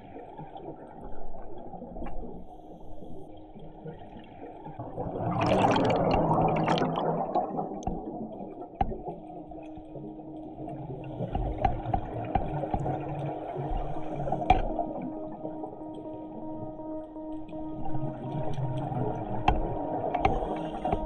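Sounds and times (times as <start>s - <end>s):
underwater bubbles gurgling: 0.0s - 21.0s
faint clicks: 7.8s - 21.0s.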